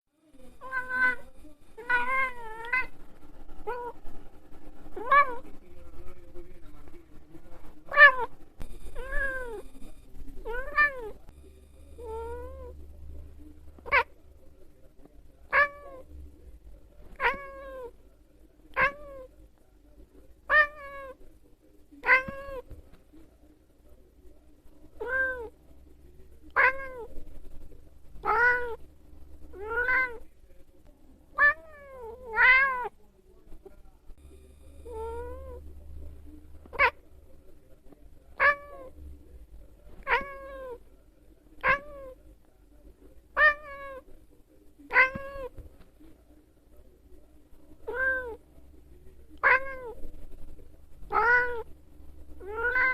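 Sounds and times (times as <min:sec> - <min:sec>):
cat meowing: 0:00.6 - 0:03.0, 0:03.6 - 0:04.0, 0:05.0 - 0:05.4, 0:07.9 - 0:08.3, 0:09.0 - 0:09.8, 0:10.4 - 0:11.2, 0:11.9 - 0:12.8, 0:13.8 - 0:14.2, 0:15.5 - 0:16.0, 0:17.1 - 0:18.0, 0:18.7 - 0:19.3, 0:20.5 - 0:21.2, 0:22.0 - 0:22.7, 0:25.0 - 0:25.5, 0:26.6 - 0:27.1, 0:28.2 - 0:28.8, 0:29.5 - 0:30.2, 0:31.4 - 0:32.9, 0:34.7 - 0:35.6, 0:36.7 - 0:37.0, 0:38.4 - 0:38.9, 0:40.0 - 0:40.8, 0:41.6 - 0:42.2, 0:43.4 - 0:44.0, 0:44.9 - 0:45.6, 0:47.8 - 0:48.4, 0:49.4 - 0:50.0, 0:51.1 - 0:51.7, 0:52.4 - 0:52.9.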